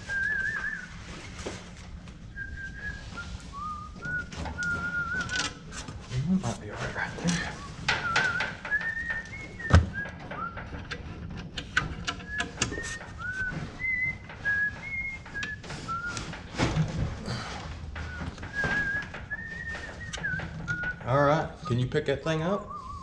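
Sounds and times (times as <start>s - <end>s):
person whistling a tune: 0.0s - 1.6s, 2.3s - 5.7s, 6.8s - 10.8s, 12.1s - 16.7s, 17.3s - 21.8s, 22.5s - 23.0s
loud clunk: 7.6s - 11.1s.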